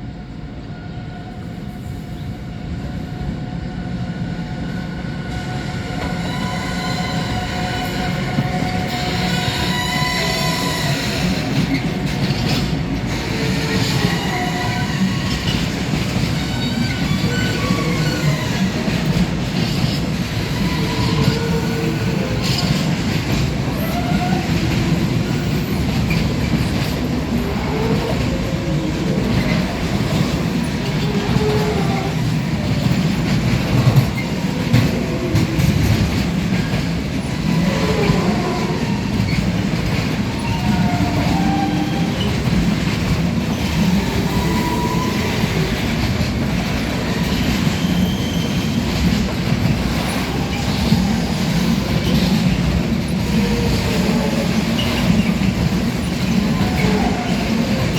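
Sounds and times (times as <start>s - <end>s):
train wheels rumbling on rails: 0.0s - 57.9s
wavering wheel squeals: 5.9s - 12.6s, 47.2s - 49.1s.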